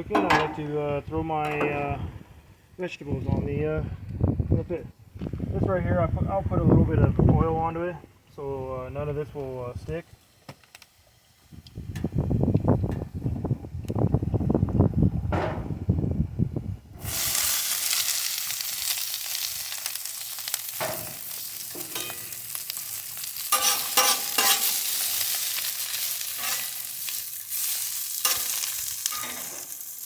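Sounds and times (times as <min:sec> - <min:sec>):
vegetables sizzling in oil: 0:17.0 - 0:30.0.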